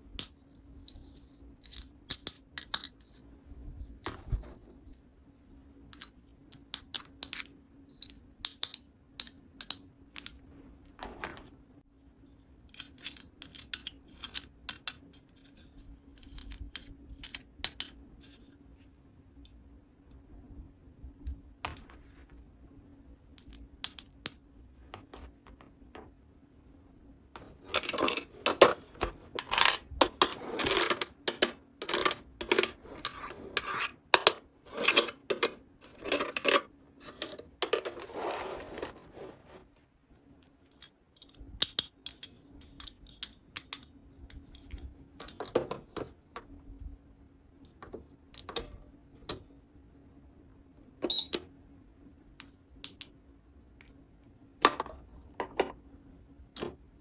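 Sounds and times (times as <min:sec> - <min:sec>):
plastic toy pieces clicking: 0:06.0 - 0:10.4.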